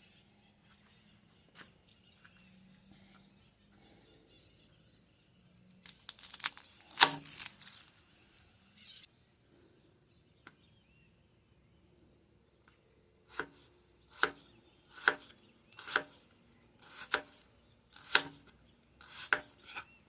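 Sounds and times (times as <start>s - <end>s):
rustling crinkling handling noise: 5.8s - 8.5s.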